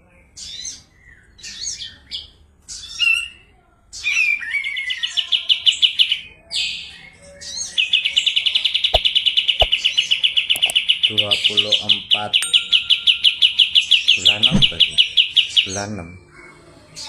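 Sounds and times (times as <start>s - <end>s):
songbird singing: 7.8s - 15.9s
sharp clicks: 10.5s - 10.8s.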